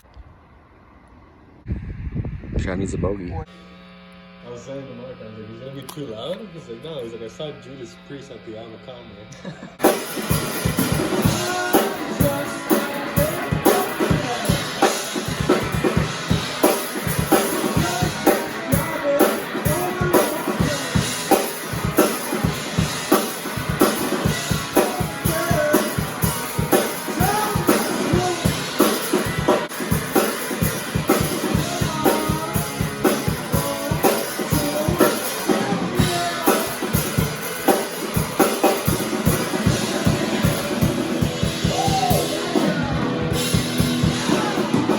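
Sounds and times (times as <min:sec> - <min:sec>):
rock band playing: 0:09.8 - 0:44.9.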